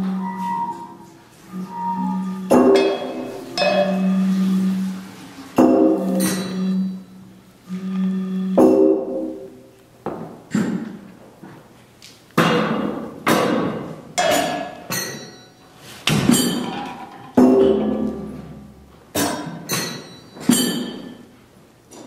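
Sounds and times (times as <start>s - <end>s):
percussion hits ringing out: 2.4s - 4.6s, 5.6s - 7.2s, 8.6s - 9.5s, 12.4s - 21.2s.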